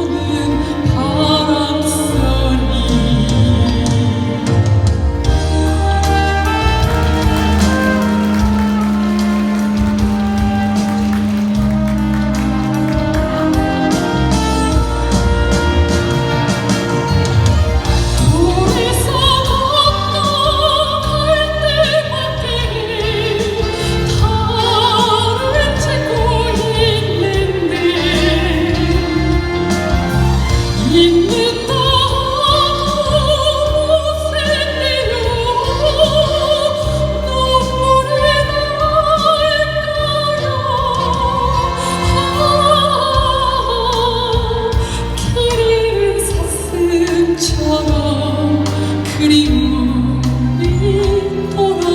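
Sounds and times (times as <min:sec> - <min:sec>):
instrumental accompaniment: 0:00.0 - 0:51.9
soprano singing operatically: 0:18.2 - 0:51.9.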